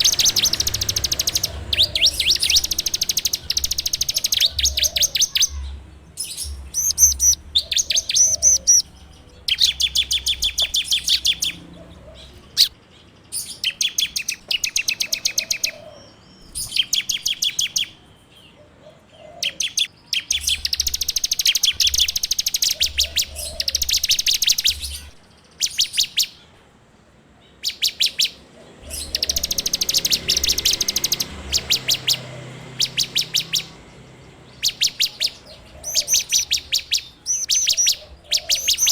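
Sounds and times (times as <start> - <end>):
bird rattling trill: 0.0 - 5.6, 6.4 - 11.6, 19.8 - 25.2, 28.8 - 38.9.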